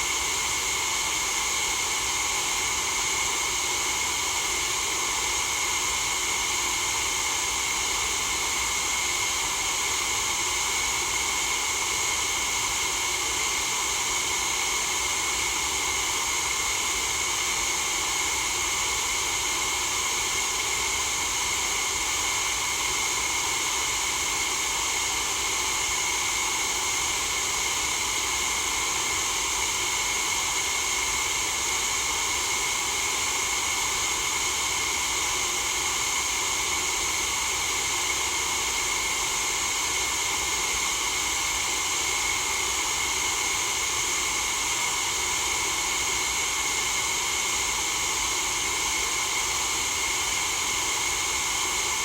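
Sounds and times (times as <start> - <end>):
steady white noise hiss: 0.0 - 2.7.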